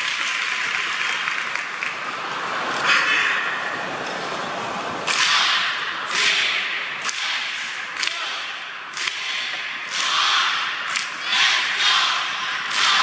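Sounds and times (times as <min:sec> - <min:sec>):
whip-like cracks with hiss: 0:05.1 - 0:08.3.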